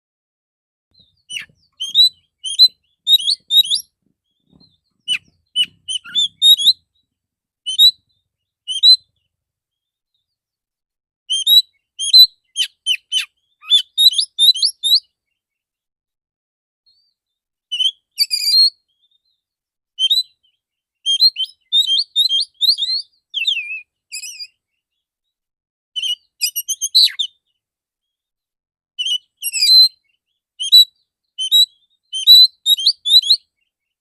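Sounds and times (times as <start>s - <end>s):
songbird singing rapid notes: 1.0s - 10.4s, 11.3s - 15.6s, 20.0s - 25.1s, 29.0s - 34.0s.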